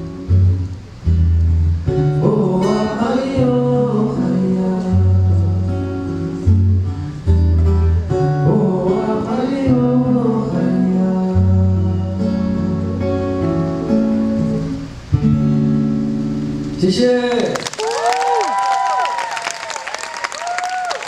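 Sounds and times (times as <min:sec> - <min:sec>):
bass line: 0:00.0 - 0:16.8
strummed acoustic guitar: 0:00.0 - 0:16.9.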